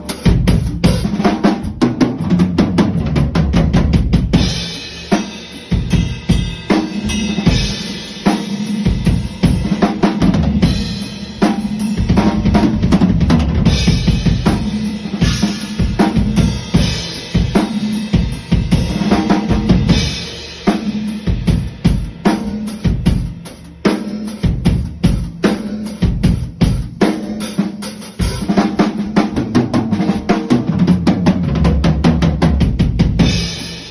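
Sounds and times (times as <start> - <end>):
drum kit groove: 0.0 - 33.9.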